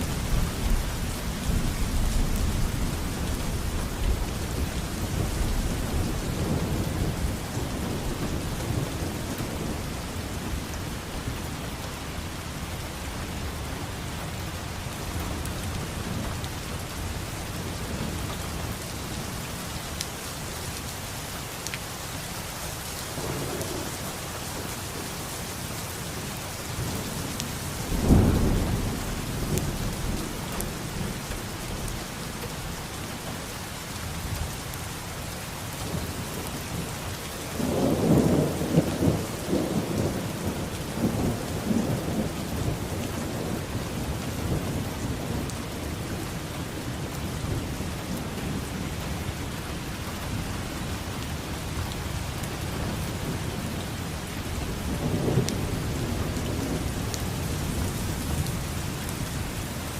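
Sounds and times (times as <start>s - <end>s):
steady rain falling: 0.0s - 59.9s
thunder rumbling: 26.8s - 32.2s, 37.6s - 59.8s.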